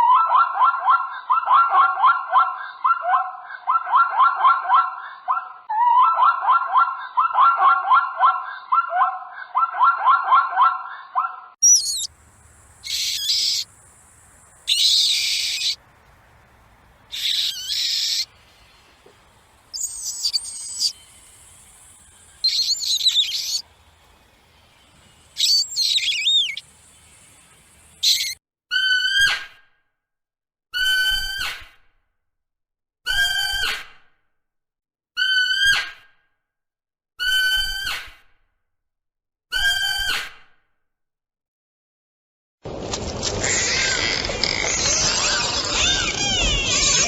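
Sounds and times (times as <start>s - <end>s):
fast pulsed animal chattering: 11.6s - 28.4s, 42.7s - 47.0s
high animal squealing calls: 11.6s - 28.4s, 42.7s - 47.0s.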